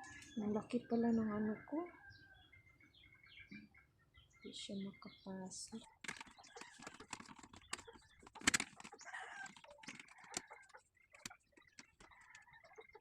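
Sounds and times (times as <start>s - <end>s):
tool and metal parts clicking: 6.0s - 10.6s.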